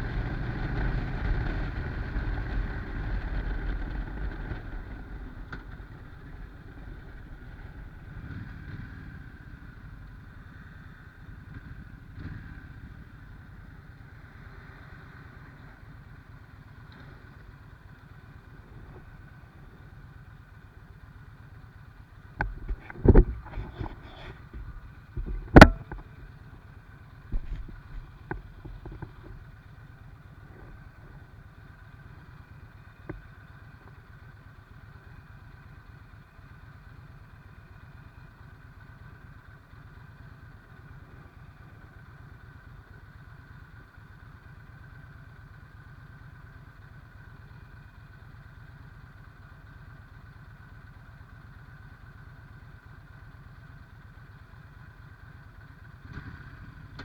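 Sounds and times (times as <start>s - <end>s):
sharp knocks and clatters: 22.4s - 26.2s, 27.3s - 29.4s.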